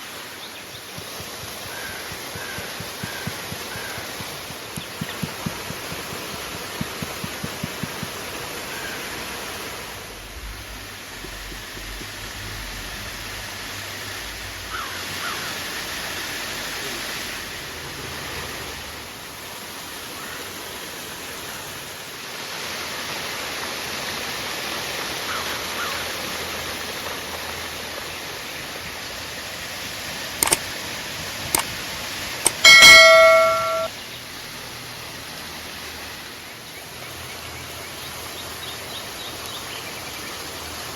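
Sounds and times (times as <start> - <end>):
sharp clicks: 1.0 - 8.2, 30.4 - 30.6, 32.4 - 33.9
loud ringing metal clank: 32.5 - 33.9.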